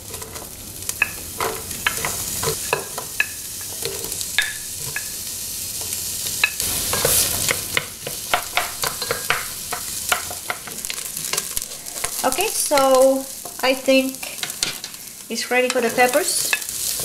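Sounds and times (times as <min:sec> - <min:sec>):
onions sizzling in oil: 0:00.0 - 0:17.0
utensil scraping a pan: 0:06.4 - 0:15.1.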